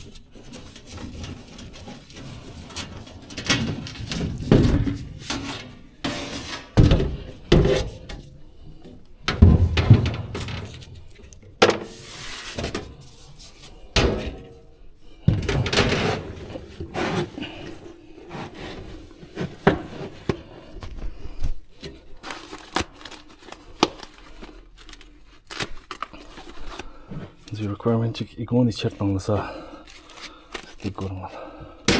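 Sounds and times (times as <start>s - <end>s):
objects knocking and clattering: 0.0s - 13.1s, 13.8s - 14.6s, 15.2s - 22.6s.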